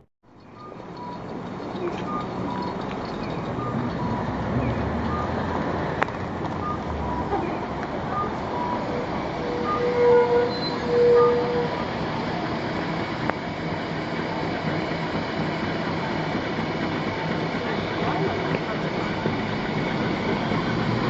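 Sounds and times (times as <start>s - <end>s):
traffic noise: 0.0s - 21.0s
low held tones: 0.3s - 12.5s.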